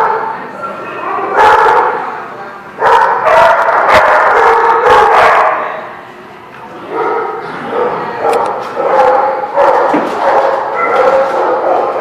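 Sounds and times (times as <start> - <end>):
dogs barking and yipping: 1.1 - 2.0, 2.8 - 5.8, 6.9 - 12.0.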